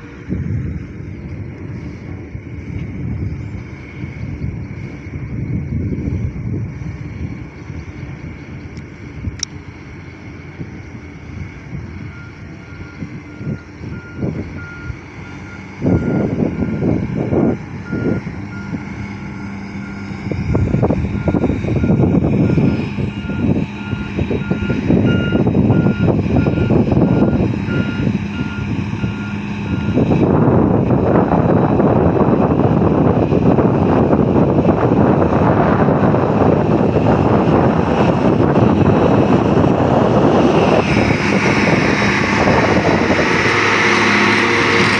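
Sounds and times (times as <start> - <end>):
diesel engine working: 0.0 - 44.9
reversing alarm beeping: 12.0 - 17.1, 17.8 - 30.2.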